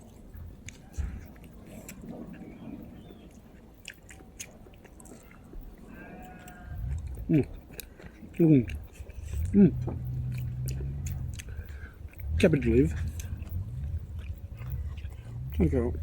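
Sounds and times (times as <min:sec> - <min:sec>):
wet mouth clicks: 0:00.0 - 0:02.5, 0:03.1 - 0:05.7, 0:06.4 - 0:15.8
chewing and biting food: 0:00.0 - 0:16.0
low rumble: 0:05.6 - 0:07.8, 0:08.6 - 0:16.0.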